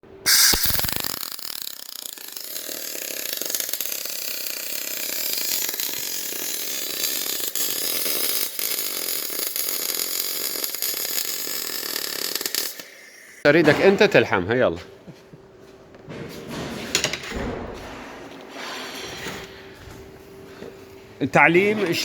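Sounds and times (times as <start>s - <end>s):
welding arc crackling hiss: 0.2s - 13.4s.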